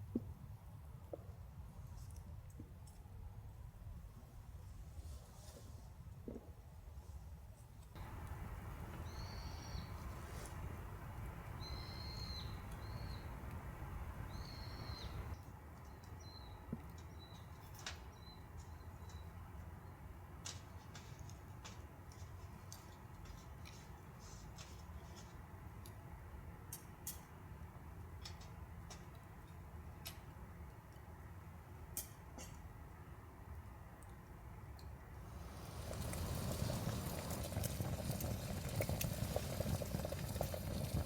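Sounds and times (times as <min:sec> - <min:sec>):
bird chirping: 0:08.0 - 0:15.4
campfire crackling and popping: 0:08.0 - 0:15.4, 0:35.3 - 0:41.0
steady low rush: 0:08.0 - 0:15.4.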